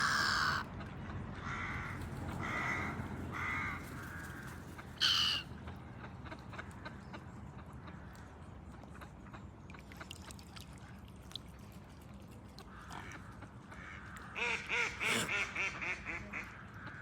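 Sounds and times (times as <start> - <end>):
bird cawing: 0.0 - 0.6, 1.4 - 5.5.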